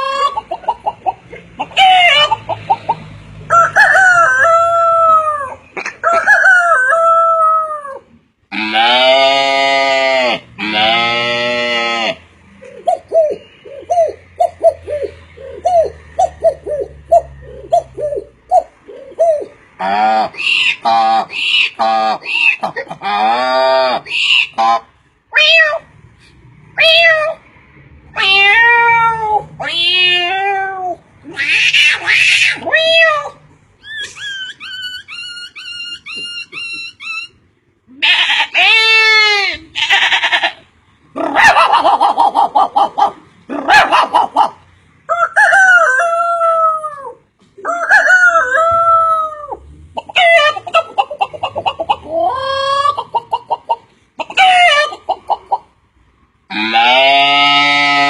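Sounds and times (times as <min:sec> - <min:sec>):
animal cries gliding in pitch: 0:25.3 - 0:25.9, 0:26.8 - 0:27.4, 0:28.1 - 0:40.6, 0:51.4 - 0:53.0, 0:56.5 - 0:58.0.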